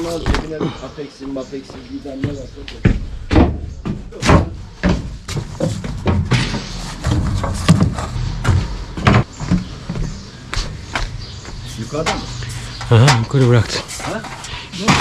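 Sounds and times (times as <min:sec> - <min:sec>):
knocks and bangs: 0:02.2 - 0:10.2.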